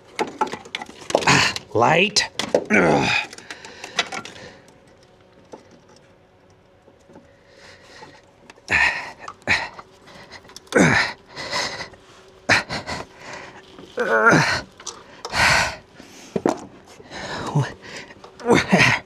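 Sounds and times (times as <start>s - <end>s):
faint steady hum: 0.0s - 19.0s
man grunting and breathing hard: 1.2s - 1.7s, 2.7s - 3.7s, 8.7s - 14.7s, 15.3s - 15.9s, 17.0s - 19.0s.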